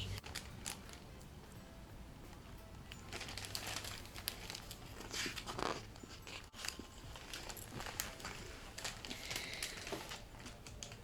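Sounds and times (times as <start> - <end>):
book pages turning: 3.0 - 11.0.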